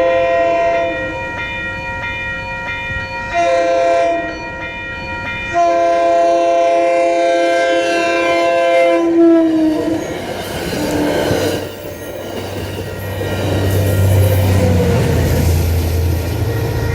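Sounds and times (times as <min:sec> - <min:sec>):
train horn chord: 0:00.0 - 0:01.3, 0:03.3 - 0:04.4, 0:05.5 - 0:09.9
train wheels on rail: 0:08.0 - 0:16.9.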